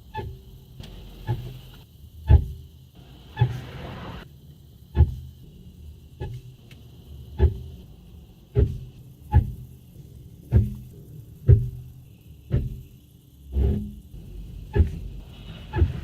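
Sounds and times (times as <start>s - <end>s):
car brakes squealing: 3.2s - 4.2s.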